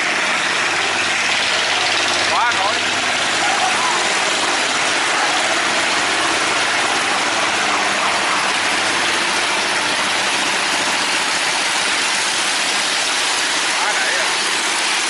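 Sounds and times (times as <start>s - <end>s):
boat engine running: 0.0s - 15.0s
water rushing: 0.0s - 15.0s.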